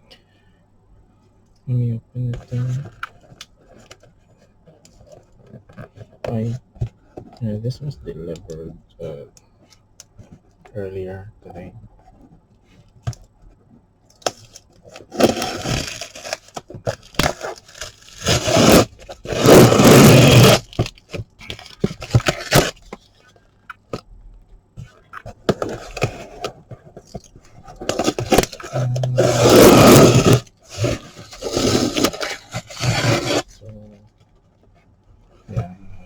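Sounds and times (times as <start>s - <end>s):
packing tape ripping: 14.3s - 21.0s, 21.8s - 22.8s, 27.8s - 33.5s
cardboard flaps scraping: 14.9s - 22.9s, 24.8s - 33.5s.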